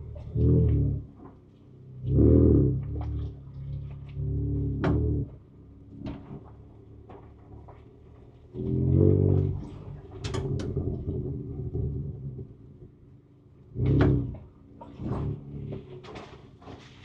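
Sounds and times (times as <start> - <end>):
truck engine revving: 0.0 - 1.4, 2.0 - 7.6, 8.4 - 12.7, 13.7 - 17.0
knocks and clunks of truck: 4.8 - 12.6, 13.8 - 17.0.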